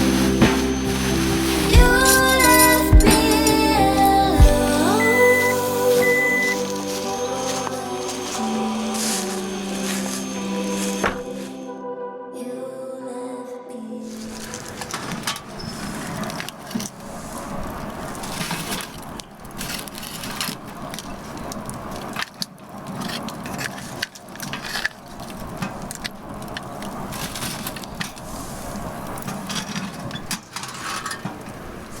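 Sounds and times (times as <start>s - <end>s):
firewood crackling and popping: 14.2s - 30.4s.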